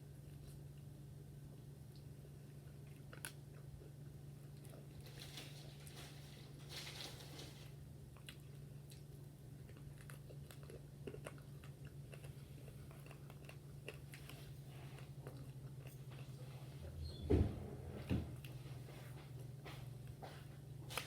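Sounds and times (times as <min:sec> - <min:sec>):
steady low hum: 0:00.0 - 0:21.0
chewing and biting crunches: 0:08.1 - 0:16.6.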